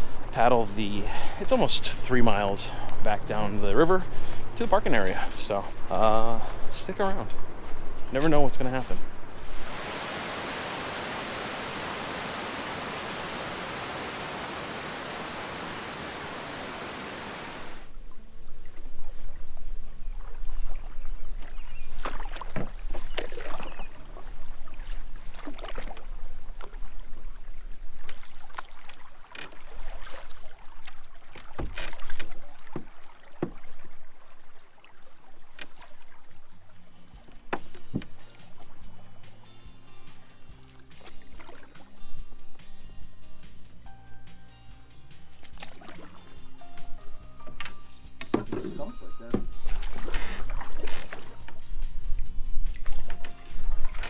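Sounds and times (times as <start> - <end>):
paddles splashing in water: 0.0 - 39.4, 40.0 - 42.0, 45.3 - 46.6, 49.4 - 54.0
steady rushing noise: 9.4 - 17.9
canoe knock: 31.4 - 33.9, 37.3 - 38.6, 47.4 - 51.4.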